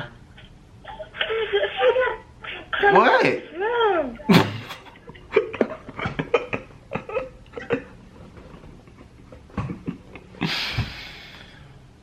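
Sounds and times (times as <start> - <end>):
breathy exhale: 10.4 - 11.8.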